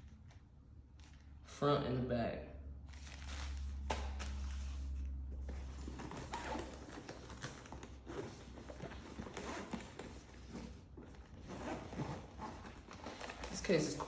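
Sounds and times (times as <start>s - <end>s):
packaging rustling: 2.9s - 4.8s.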